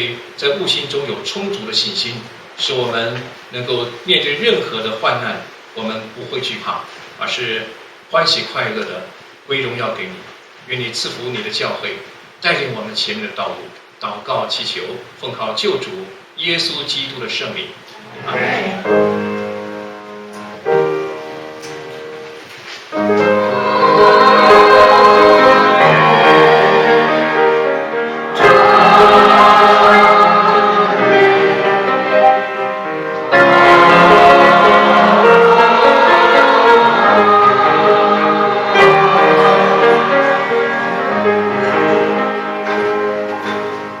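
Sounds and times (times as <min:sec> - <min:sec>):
keyboard playing held chords: 0:18.8 - 0:44.0
slow instrumental music: 0:18.8 - 0:44.0.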